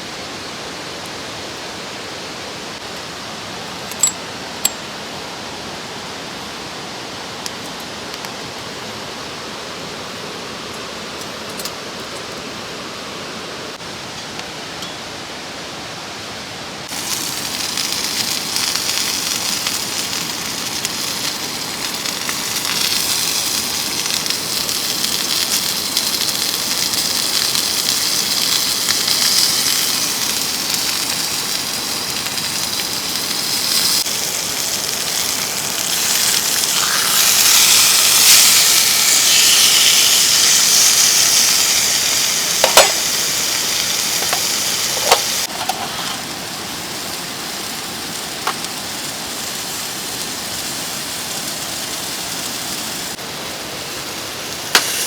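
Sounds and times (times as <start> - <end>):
food sizzling in a pan: 16.9 - 53.2, 53.9 - 55.0.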